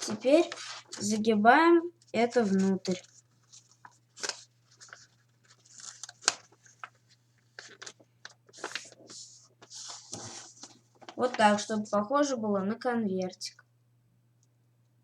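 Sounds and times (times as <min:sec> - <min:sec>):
paper crinkling and rustling: 0:00.0 - 0:01.4, 0:02.1 - 0:11.9.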